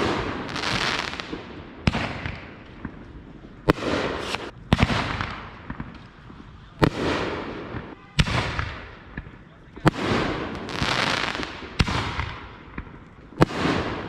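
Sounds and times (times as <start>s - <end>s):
fireworks bangs: 0.0s - 14.0s
fireworks hiss: 3.7s - 4.6s.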